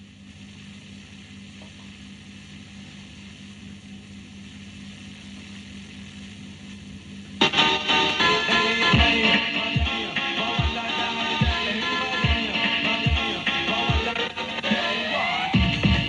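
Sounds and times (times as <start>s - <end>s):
radio static hiss: 0.0s - 16.0s
loud music: 7.4s - 16.0s.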